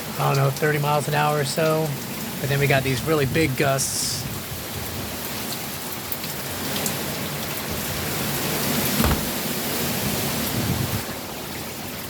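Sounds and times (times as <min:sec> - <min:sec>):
rain and gusting wind: 0:00.0 - 0:12.0
sudden low thump: 0:09.0 - 0:09.5.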